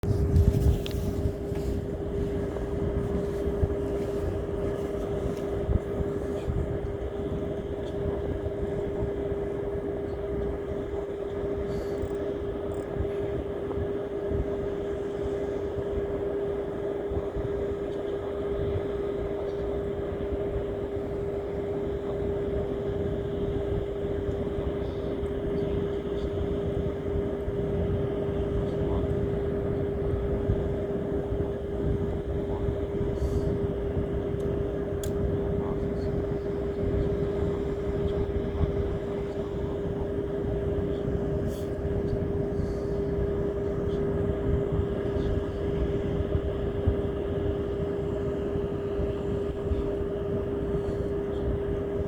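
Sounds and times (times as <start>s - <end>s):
motor running steadily: 0.0s - 52.0s.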